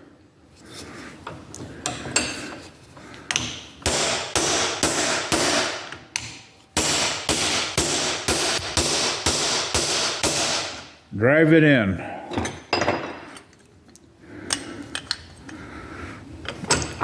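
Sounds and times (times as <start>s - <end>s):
hammer striking metal: 3.8s - 11.0s.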